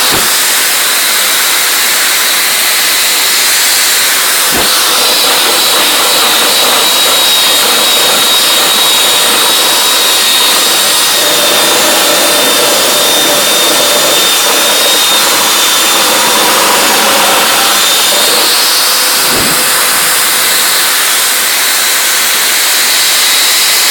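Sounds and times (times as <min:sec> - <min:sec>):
shop vacuum running: 0:00.0 - 0:23.9.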